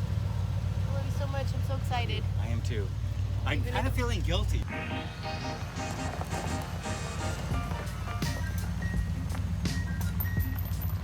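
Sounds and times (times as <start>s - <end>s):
music with bass and beat: 4.6s - 11.0s.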